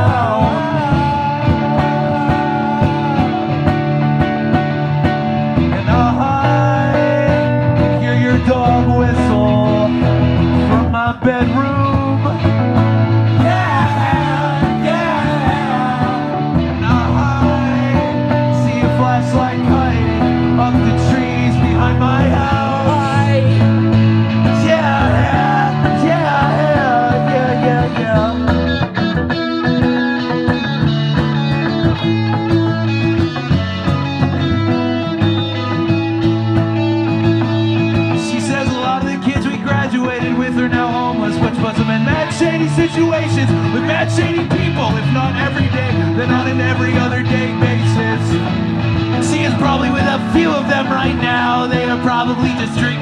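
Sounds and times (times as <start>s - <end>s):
person singing: 0.0s - 4.0s, 5.7s - 12.6s, 13.3s - 28.7s, 38.1s - 53.0s
live rock music: 0.0s - 53.0s.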